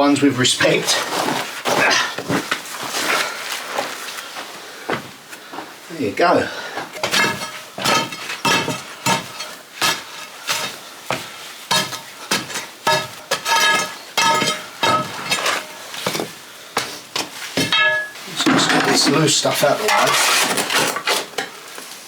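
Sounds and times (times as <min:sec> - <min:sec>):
metal tool clinking on stone: 0:11.7 - 0:15.7, 0:17.6 - 0:19.1.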